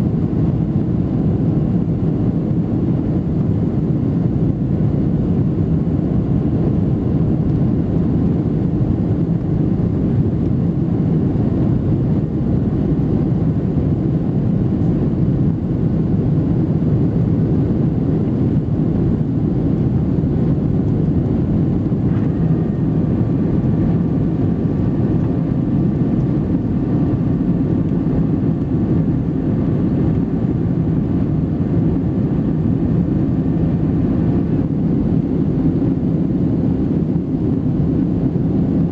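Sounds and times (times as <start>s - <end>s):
airliner cabin engine rumble: 0.0s - 38.9s
faint steady whine: 0.0s - 38.9s.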